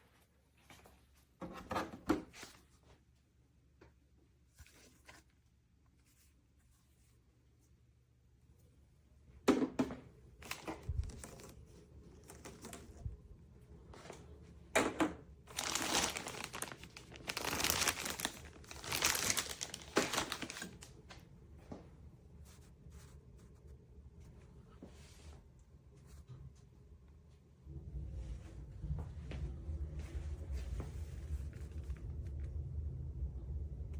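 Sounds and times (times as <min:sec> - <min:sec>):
packaging crinkling and tearing: 0:10.4 - 0:13.0, 0:15.5 - 0:21.0.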